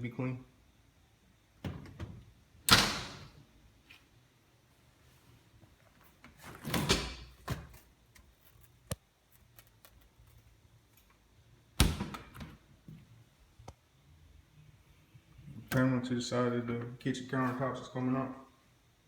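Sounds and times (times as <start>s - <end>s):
sharp door click: 2.7s - 3.3s.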